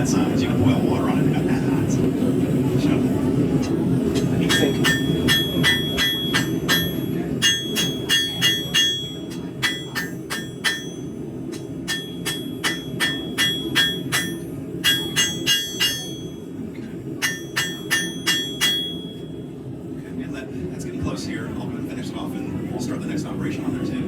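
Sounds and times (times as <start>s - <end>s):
hammer ringing on anvil: 4.2s - 16.5s, 17.2s - 19.4s.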